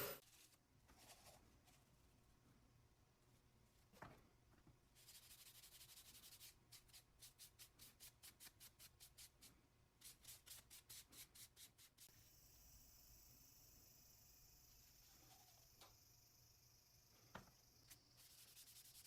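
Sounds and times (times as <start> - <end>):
steady hiss: 11.8 - 19.0
hand rubbing or scraping strokes: 18.2 - 19.0.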